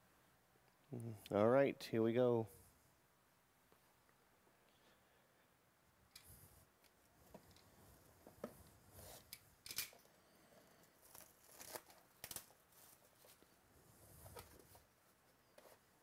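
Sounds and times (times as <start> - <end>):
wrapping tearing and crinkling: 10.9 - 13.4.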